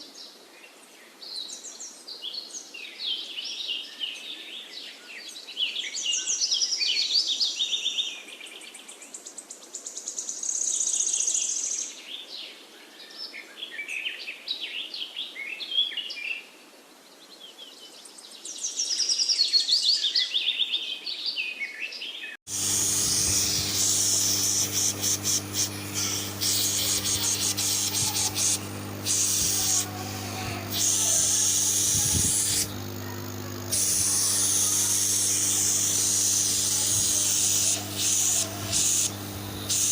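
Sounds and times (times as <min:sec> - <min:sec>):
loud hiss of air: 0:22.5 - 0:39.9
refrigerator compressor humming: 0:22.5 - 0:39.9.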